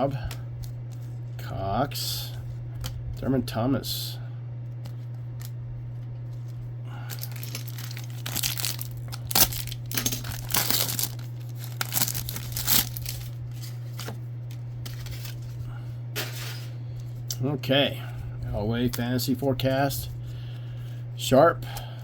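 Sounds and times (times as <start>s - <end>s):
steady low hum: 0.0s - 22.0s
card pack wrapper tearing: 6.2s - 15.6s.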